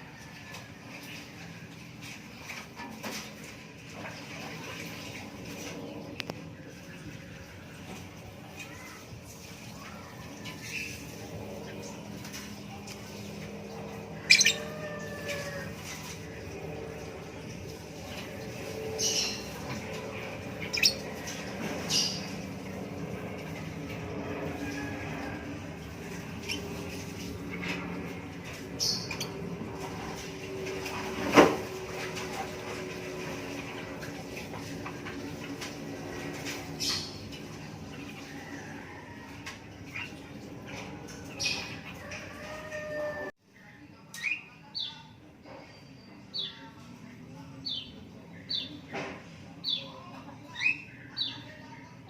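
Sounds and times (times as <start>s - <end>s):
bird chirping: 14.2s - 14.7s.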